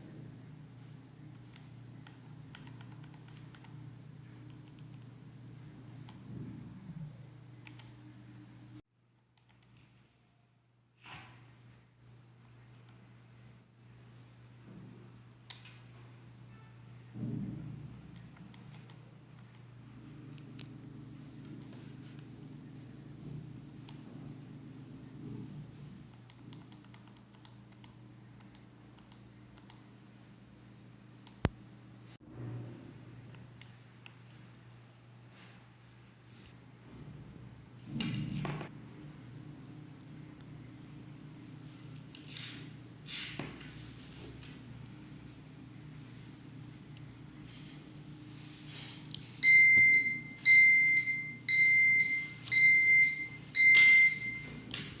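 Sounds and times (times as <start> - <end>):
alarm clock beeping: 49.4 - 54.6.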